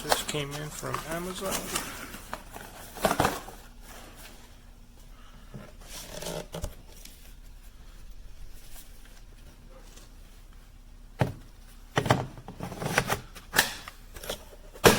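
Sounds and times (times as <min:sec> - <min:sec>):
rustling: 0:00.0 - 0:10.7.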